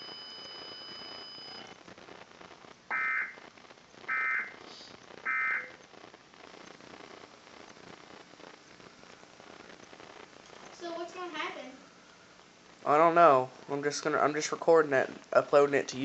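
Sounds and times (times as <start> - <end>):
faint steady high tone: 0.0 - 1.8
buzzy digital data tones: 0.0 - 16.0.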